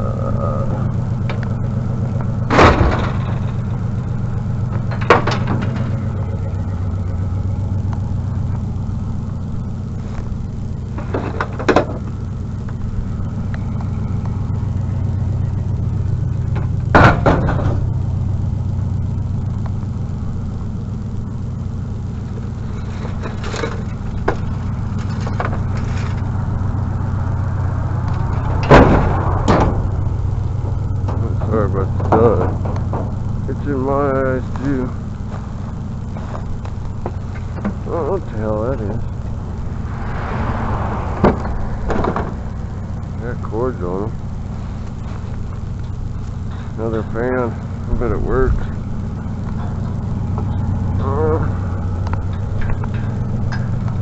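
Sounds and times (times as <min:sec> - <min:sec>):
truck engine idling: 0:00.0 - 0:54.0
scrap metal bangs and clanks: 0:02.4 - 0:07.7, 0:16.5 - 0:17.9, 0:28.0 - 0:33.4, 0:39.6 - 0:42.9.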